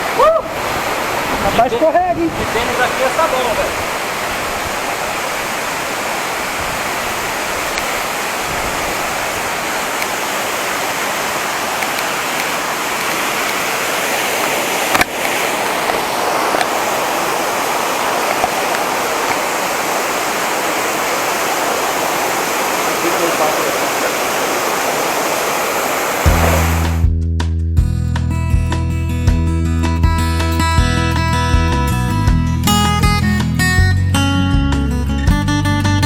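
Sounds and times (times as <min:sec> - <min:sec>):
waterfall rushing: 0:00.0 - 0:27.1.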